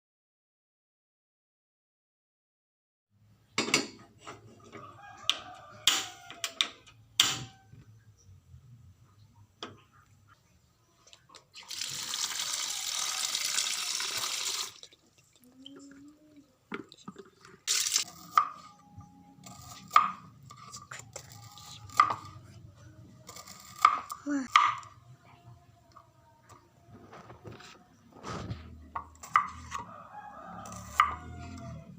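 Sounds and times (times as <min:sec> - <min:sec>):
water running from tap: 0:11.6 - 0:14.9, 0:17.7 - 0:18.0.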